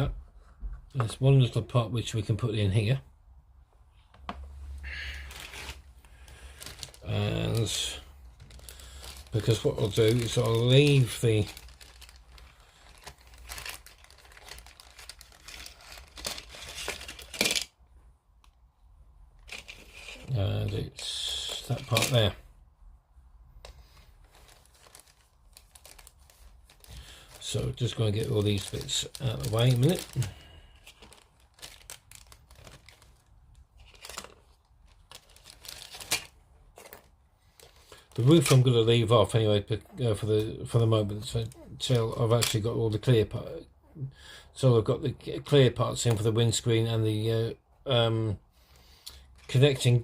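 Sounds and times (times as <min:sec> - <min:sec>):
plastic parts clicking and rustling: 0:06.6 - 0:17.8, 0:19.4 - 0:22.4, 0:23.6 - 0:38.7.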